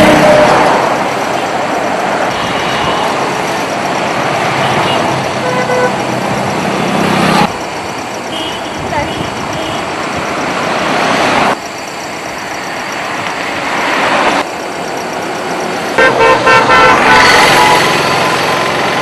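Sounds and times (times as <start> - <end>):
road traffic noise: 0.0 - 19.0
car horns honking: 2.3 - 3.5, 4.2 - 6.2, 8.2 - 10.2, 15.7 - 19.0.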